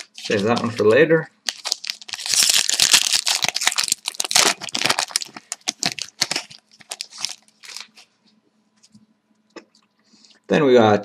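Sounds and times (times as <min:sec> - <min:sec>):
foil wrapper crinkling: 0:00.0 - 0:00.8, 0:01.4 - 0:08.1.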